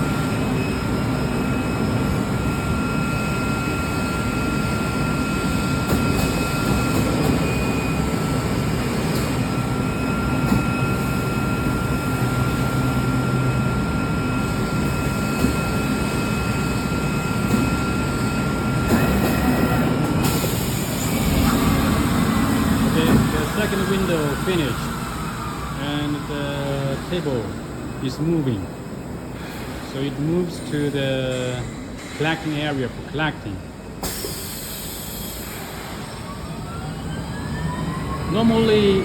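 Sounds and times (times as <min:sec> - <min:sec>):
fabric cutting machine running: 0:14.4 - 0:28.4
hiss: 0:34.0 - 0:36.0.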